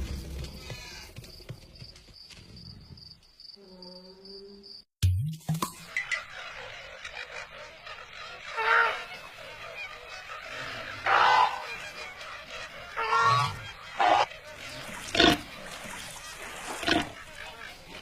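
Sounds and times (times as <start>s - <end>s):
animal calling: 6.3s - 18.0s.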